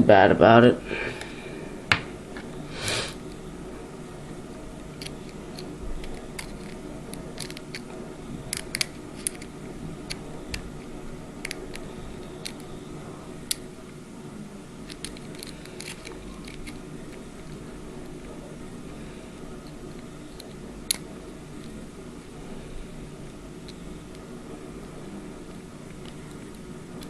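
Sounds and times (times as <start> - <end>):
faint steady hum: 0.0 - 27.0
lock pick clicking on pins: 5.0 - 7.9, 8.5 - 10.7, 14.8 - 16.8.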